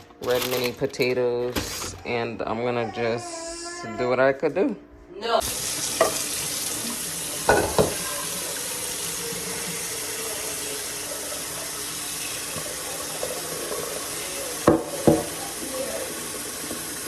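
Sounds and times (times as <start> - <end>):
tap running into sink: 5.4 - 17.0.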